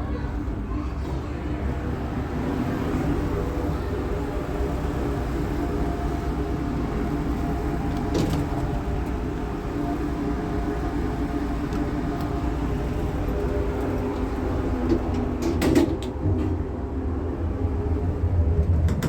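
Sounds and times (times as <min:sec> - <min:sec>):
lift mechanical hum: 0:00.0 - 0:19.0.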